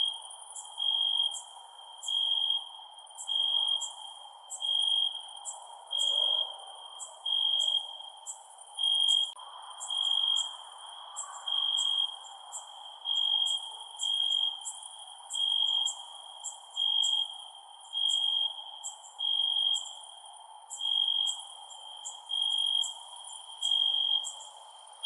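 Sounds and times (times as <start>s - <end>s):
crickets trilling: 0.0s - 25.0s
insects chirping higher: 0.0s - 25.0s.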